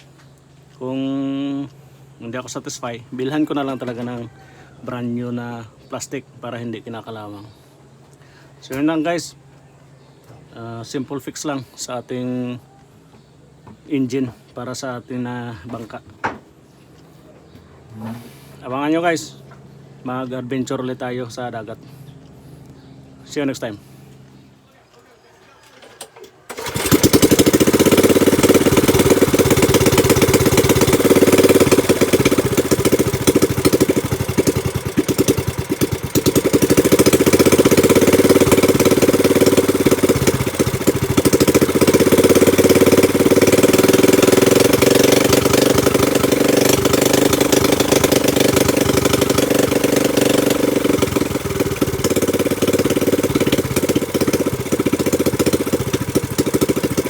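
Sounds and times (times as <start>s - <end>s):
small boat engine running: 26.5s - 57.0s.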